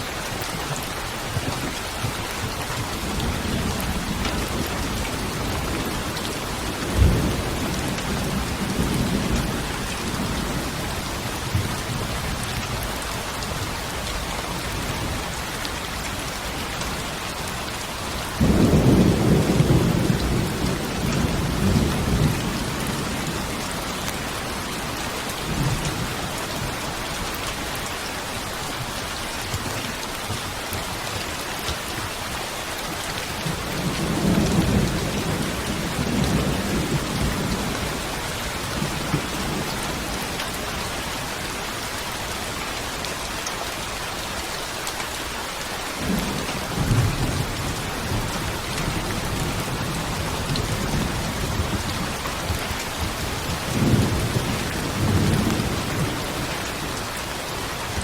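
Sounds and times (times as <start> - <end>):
steady rain falling: 0.0 - 58.0
rolling thunder: 18.4 - 26.7, 46.0 - 57.1.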